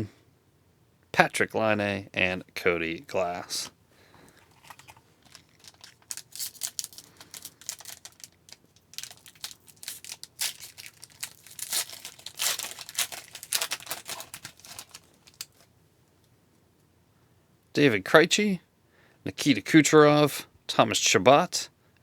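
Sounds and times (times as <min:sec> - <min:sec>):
plastic wrapper crinkling and tearing: 0:04.3 - 0:15.7.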